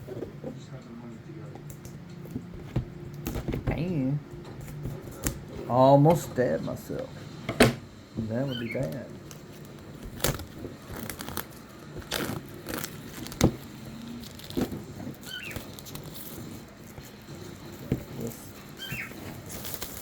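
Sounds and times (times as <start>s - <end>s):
cockatiel chirping: 8.4s - 8.9s, 15.2s - 15.9s, 18.7s - 19.3s
plastic shrink wrap crackling: 8.7s - 20.0s.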